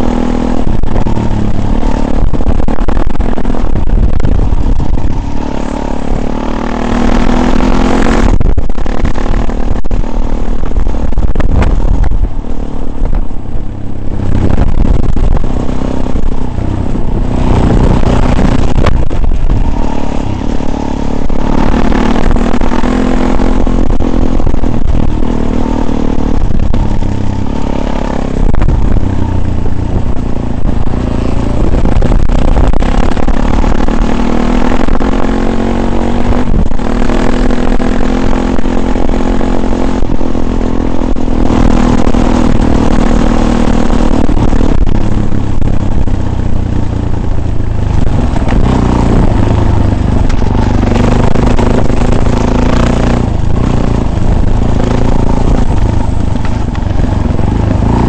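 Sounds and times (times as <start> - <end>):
off-road vehicle engine revving: 0.0 - 58.0
rattling and scraping: 41.0 - 58.0.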